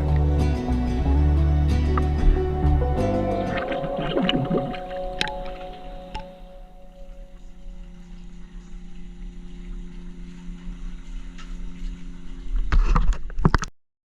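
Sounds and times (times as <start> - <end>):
boat engine droning: 0.0 - 12.7.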